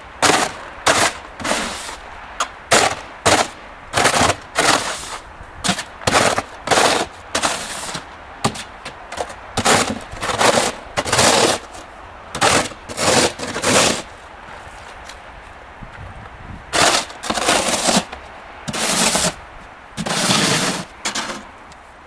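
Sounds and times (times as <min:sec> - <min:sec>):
snow shovel scraping pavement: 0:00.0 - 0:15.2, 0:16.7 - 0:19.4, 0:20.0 - 0:21.6.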